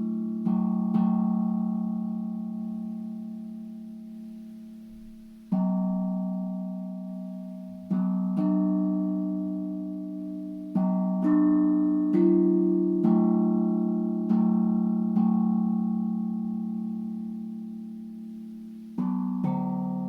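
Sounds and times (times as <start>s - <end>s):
steel tongue drum notes ringing: 5.5s - 20.0s.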